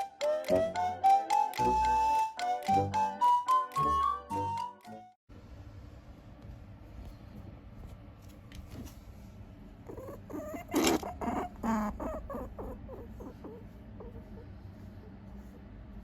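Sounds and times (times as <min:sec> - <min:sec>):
low steady hum: 0:05.3 - 0:16.0
rabbit making short calls: 0:09.8 - 0:15.7.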